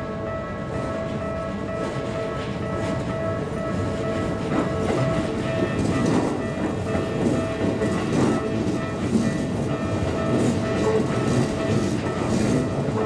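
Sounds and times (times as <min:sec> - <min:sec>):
level crossing bell ringing: 0:00.0 - 0:13.0
train rumble: 0:00.0 - 0:13.0
wheel clacks over rail joints: 0:04.3 - 0:13.0.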